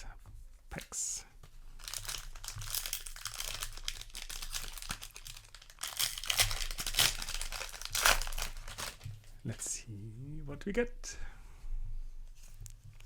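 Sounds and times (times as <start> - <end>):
plastic wrapper crinkling: 1.7 - 9.4
wrapper being torn open: 1.8 - 9.1.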